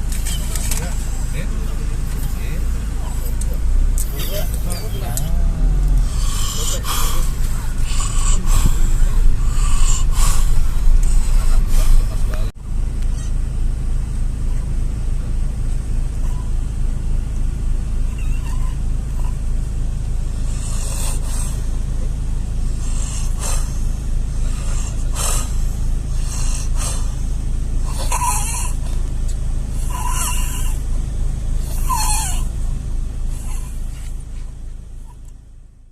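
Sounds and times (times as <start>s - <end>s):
low car drone: 0.0s - 35.9s
squeaky whistling breaths: 4.1s - 12.5s
person snoring harshly: 4.2s - 12.5s, 29.8s - 30.8s, 31.6s - 32.5s.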